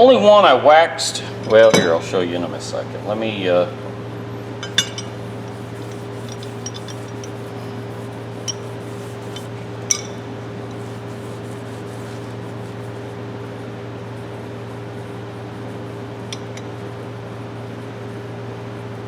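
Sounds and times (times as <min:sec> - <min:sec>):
low machine hum: 0:00.0 - 0:19.0
metal wrenches clinking: 0:04.6 - 0:07.4, 0:09.3 - 0:10.2.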